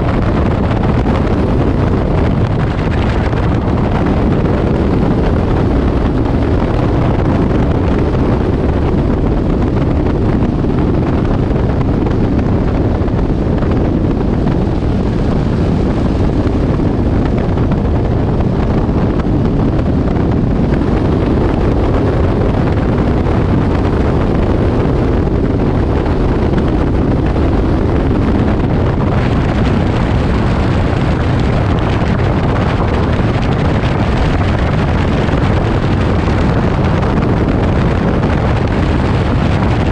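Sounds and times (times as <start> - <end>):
light aircraft engine drone: 0.0 - 39.9
rushing air: 0.0 - 39.9.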